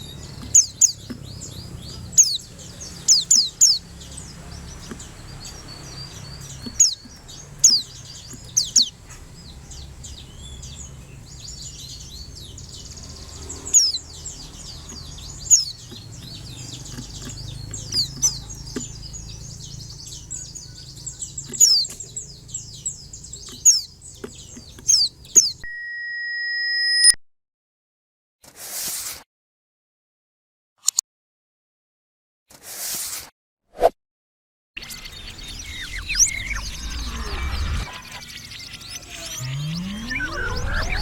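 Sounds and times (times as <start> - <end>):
bird twittering and chirping: 0.0 - 27.1, 34.8 - 41.0
electronic beep: 25.6 - 27.2, 35.4 - 41.0.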